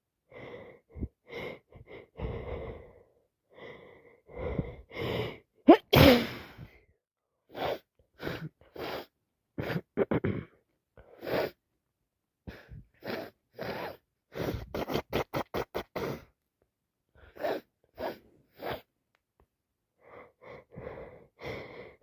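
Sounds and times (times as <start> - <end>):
person sniffing: 7.5 - 9.9, 11.2 - 11.6, 13.0 - 16.3, 17.2 - 18.9.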